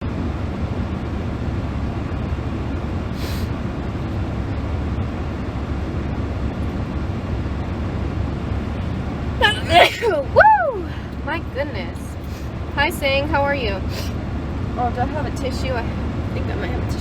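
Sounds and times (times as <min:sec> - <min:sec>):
steady low rumble: 0:00.0 - 0:17.0
short airy hiss: 0:03.2 - 0:03.5.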